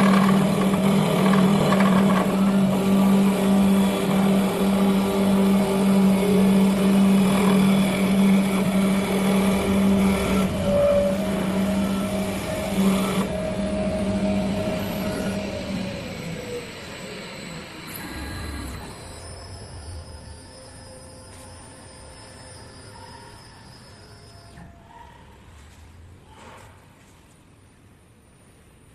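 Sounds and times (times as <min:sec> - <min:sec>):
lathe rasping on wood: 0:00.0 - 0:17.0
motor hum: 0:00.0 - 0:24.7.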